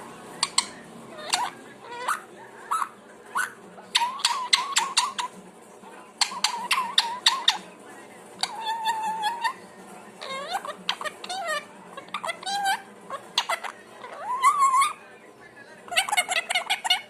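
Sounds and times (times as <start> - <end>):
parrot whistling: 0.4 - 5.3, 6.2 - 7.6, 8.4 - 9.6, 10.2 - 15.0.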